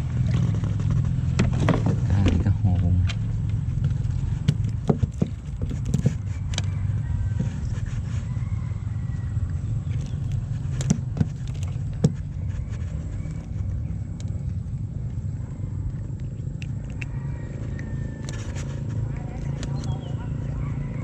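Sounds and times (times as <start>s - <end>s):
boat engine rumbling: 0.0s - 21.0s
clicks and knocks from handling net: 3.8s - 6.7s.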